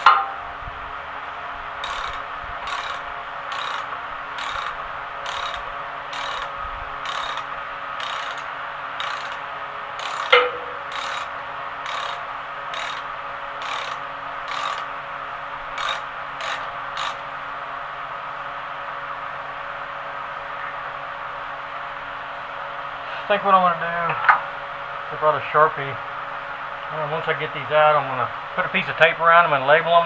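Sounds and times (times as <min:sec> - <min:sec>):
ratchet wrench strokes: 0:00.0 - 0:00.4, 0:01.8 - 0:14.9, 0:15.8 - 0:17.3
fan humming: 0:00.0 - 0:30.0
sharp metallic clink: 0:10.0 - 0:11.3.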